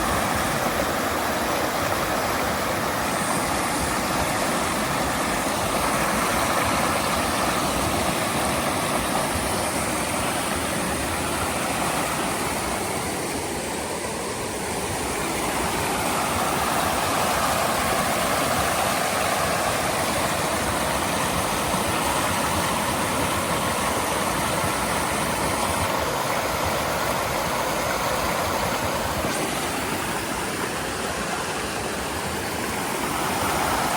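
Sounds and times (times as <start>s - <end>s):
rushing flowing water: 0.0s - 33.9s.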